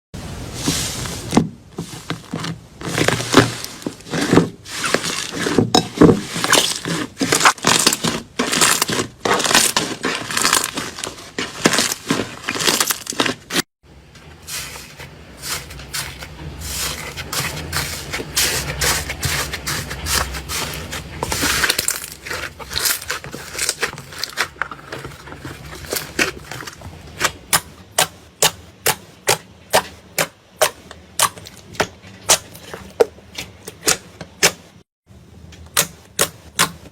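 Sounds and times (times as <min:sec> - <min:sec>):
slime squishing wet crackling: 0:06.2 - 0:13.6.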